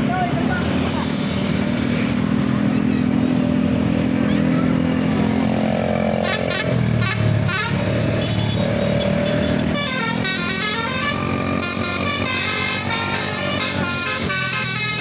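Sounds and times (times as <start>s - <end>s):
vehicle engines rumbling: 0.0s - 15.0s
musical bus horn tune: 6.1s - 15.0s.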